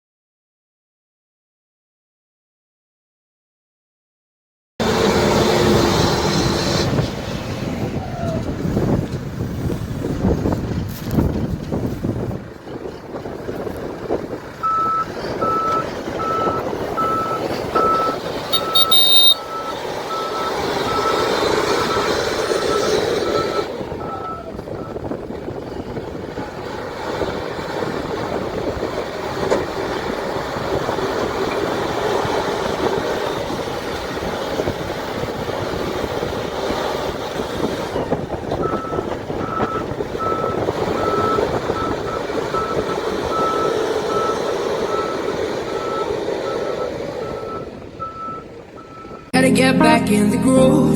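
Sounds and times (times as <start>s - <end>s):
diesel engine under load: 4.8s - 50.9s
reversing alarm beeping: 14.6s - 22.1s, 38.6s - 49.3s.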